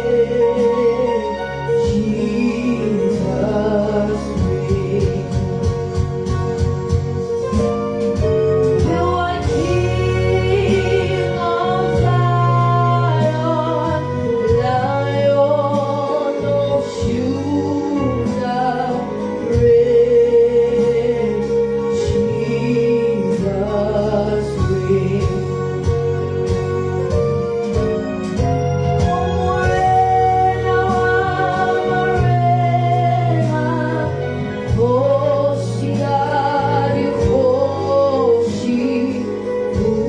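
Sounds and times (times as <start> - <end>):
sustained keyboard chords: 0.0 - 40.0
voices singing gospel song: 29.1 - 40.0.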